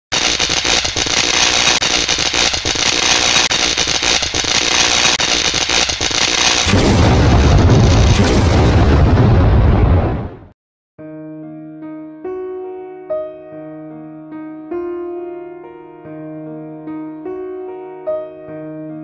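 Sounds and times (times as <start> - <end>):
rapid shot-like pops: 0.1 - 8.6
deep rumbling explosion: 6.5 - 10.6.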